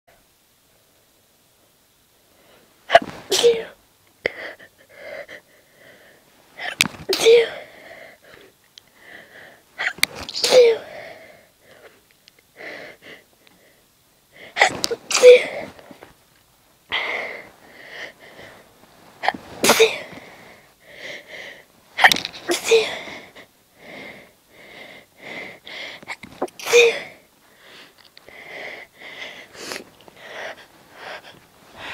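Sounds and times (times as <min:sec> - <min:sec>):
woman sneezing stifled: 0:02.9 - 0:03.8, 0:06.6 - 0:07.7, 0:09.8 - 0:10.9, 0:14.6 - 0:15.8, 0:19.2 - 0:20.2, 0:22.0 - 0:23.1, 0:26.1 - 0:27.2
breaths and sniffs: 0:27.5 - 0:31.9.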